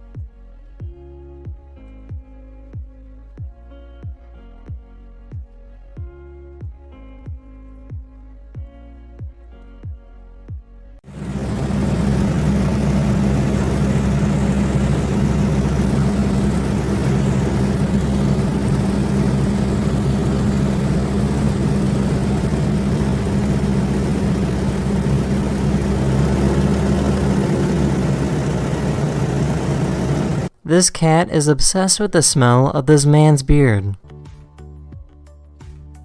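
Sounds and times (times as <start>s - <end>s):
low mechanical drone: 11.1s - 30.5s.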